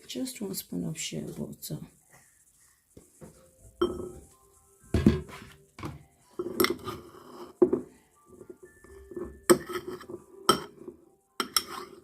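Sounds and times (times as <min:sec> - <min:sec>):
spoon scraping a container: 0:06.3 - 0:12.0.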